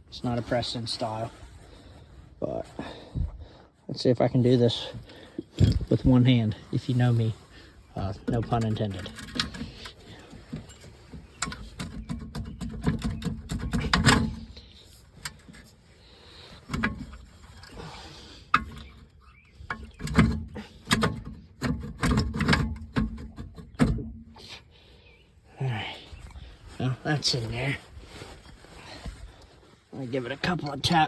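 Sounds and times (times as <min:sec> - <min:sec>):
metal knocks and clunks: 0:05.5 - 0:06.1, 0:08.2 - 0:14.6, 0:19.6 - 0:24.4.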